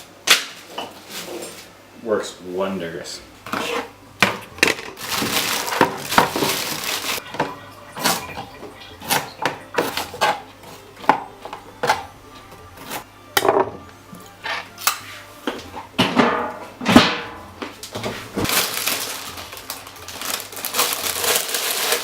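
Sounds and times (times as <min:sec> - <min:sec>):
containers and utensils clattering: 0:03.5 - 0:12.0, 0:18.4 - 0:22.0
rustling: 0:05.0 - 0:07.2.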